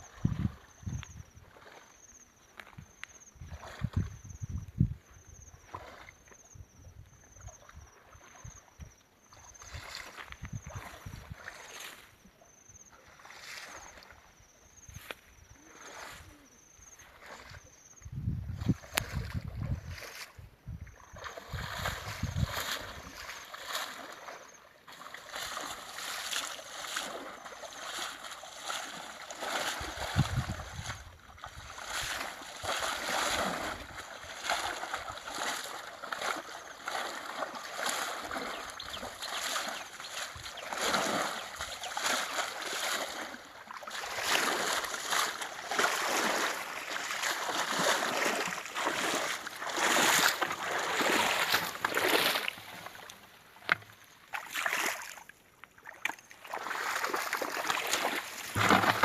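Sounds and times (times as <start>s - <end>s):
water splashing and sloshing: 0.0s - 59.0s.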